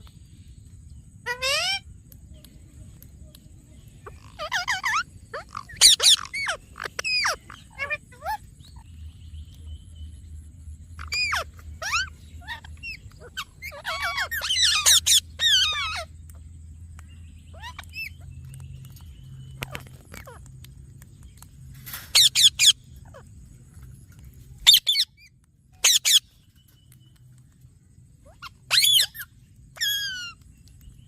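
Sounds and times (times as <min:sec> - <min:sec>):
parrot chirping and calling: 0:01.2 - 0:01.8, 0:04.0 - 0:09.0, 0:11.0 - 0:16.4, 0:17.4 - 0:20.6, 0:21.8 - 0:23.4, 0:24.6 - 0:26.5, 0:28.2 - 0:30.6.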